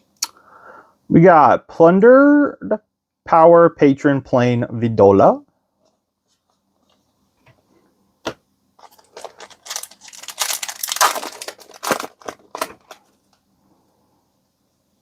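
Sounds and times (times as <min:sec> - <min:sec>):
foil wrapper crinkling and tearing: 0:08.8 - 0:13.2.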